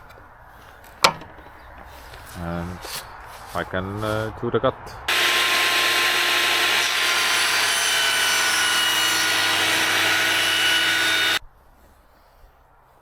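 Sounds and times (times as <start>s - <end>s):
saw blade cutting: 5.1s - 11.4s
table saw motor whine: 5.1s - 11.4s.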